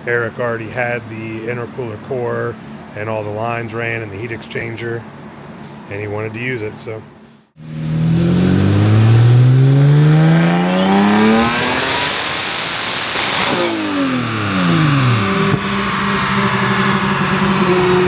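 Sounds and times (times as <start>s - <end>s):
engine revving at full throttle: 7.6s - 18.0s.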